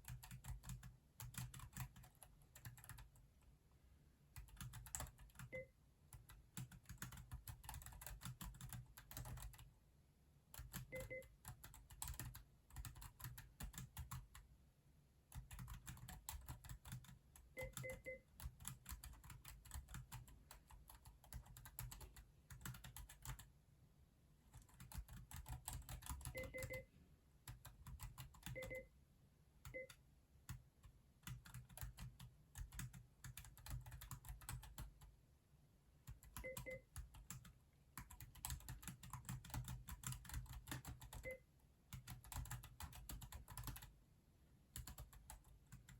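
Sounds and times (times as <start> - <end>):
mechanical keyboard typing: 0.0 - 3.2, 4.4 - 9.7, 10.5 - 14.5, 15.3 - 23.5, 24.5 - 26.8, 27.5 - 28.8, 29.6 - 35.1, 36.1 - 44.0, 44.7 - 45.9
faint double beeps: 5.5 - 5.7, 26.4 - 26.9, 28.6 - 28.9.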